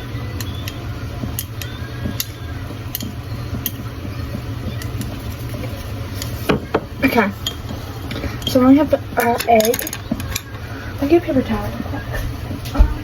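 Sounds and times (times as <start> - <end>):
chopsticks tapping on frying pan: 0.4 - 10.6.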